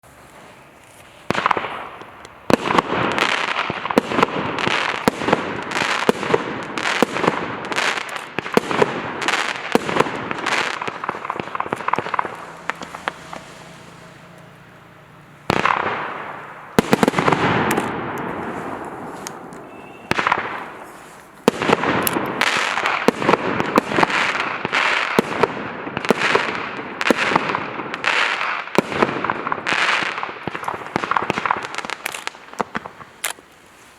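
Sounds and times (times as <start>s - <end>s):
firework bursts with crackling: 0.0s - 33.9s
firework launch thumps: 9.7s - 14.1s.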